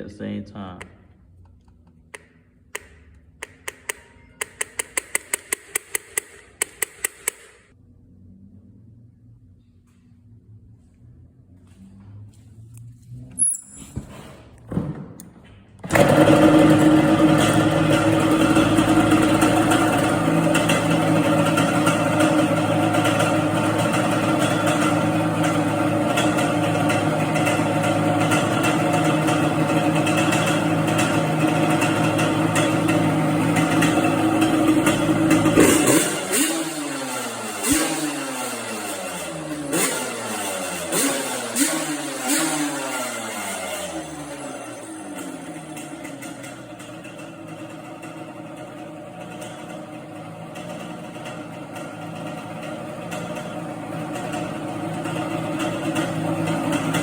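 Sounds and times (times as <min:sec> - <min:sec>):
two-stroke engine idling: 0:15.9 - 0:57.0.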